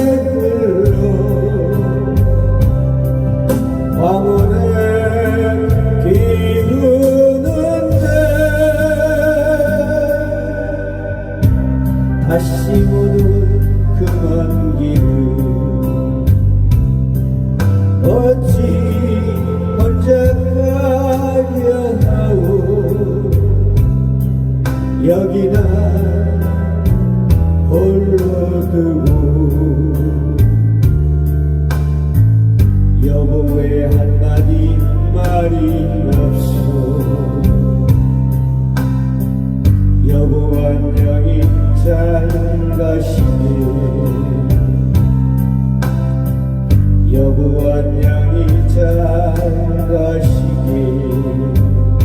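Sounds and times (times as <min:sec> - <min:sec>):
held melody line with vibrato: 0:00.0 - 0:52.0
keyboard and bass backing track: 0:00.0 - 0:52.0
person singing a ballad: 0:00.0 - 0:52.0
steady beat: 0:05.7 - 0:14.3, 0:30.4 - 0:33.1.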